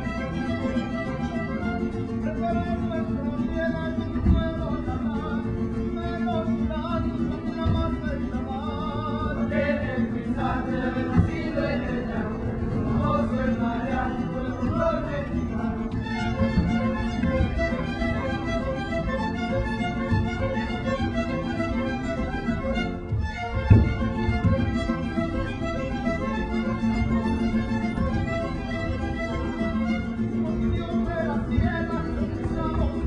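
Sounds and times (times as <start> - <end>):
folk dance music with fiddles: 0.0 - 33.0
short low thumps: 2.6 - 33.0.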